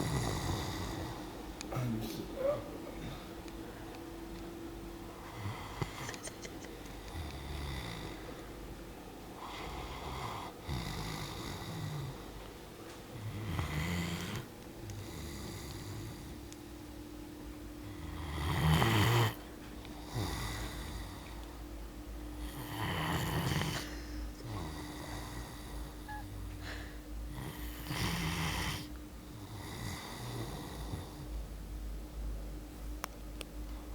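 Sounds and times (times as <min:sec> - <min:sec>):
dog snoring: 0:00.0 - 0:01.4, 0:07.0 - 0:08.3, 0:09.4 - 0:12.3, 0:13.2 - 0:16.4, 0:17.8 - 0:19.4, 0:20.0 - 0:21.2, 0:22.4 - 0:26.0, 0:27.3 - 0:31.4.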